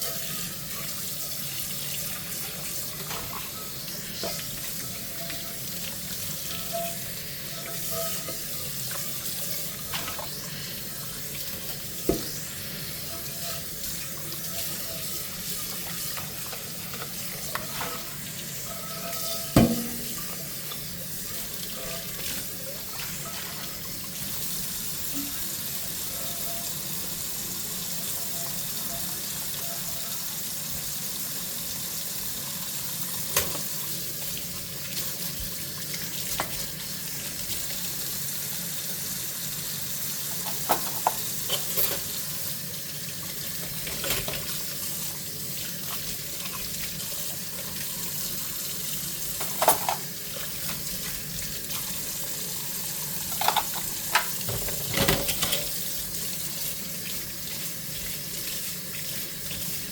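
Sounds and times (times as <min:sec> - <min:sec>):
tap water running into sink: 0:00.0 - 0:59.9
dishes clinking: 0:06.4 - 0:09.1, 0:13.1 - 0:23.8, 0:40.3 - 0:42.1, 0:49.4 - 0:50.1, 0:53.2 - 0:55.8.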